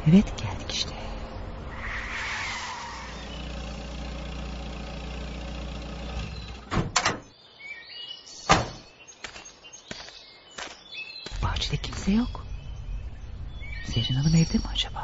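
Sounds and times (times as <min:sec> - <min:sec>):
car engine running: 0:02.7 - 0:06.9
car door thuds: 0:06.0 - 0:07.3, 0:08.5 - 0:08.8.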